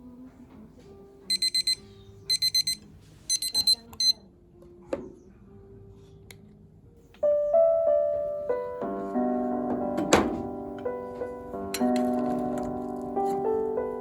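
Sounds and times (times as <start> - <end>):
piano chords: 7.1 - 14.0.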